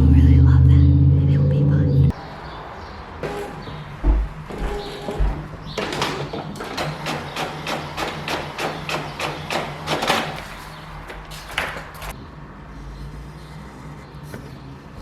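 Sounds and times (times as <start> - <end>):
rapid sharp knocks: 4.0 - 10.5.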